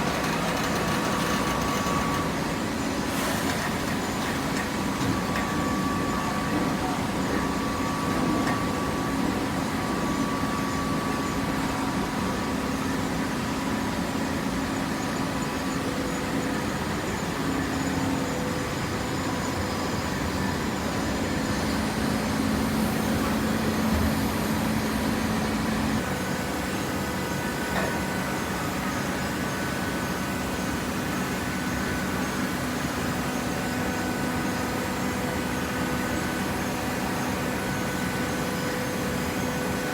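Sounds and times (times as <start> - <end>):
baler machine hum: 0.0 - 9.5, 20.2 - 30.7.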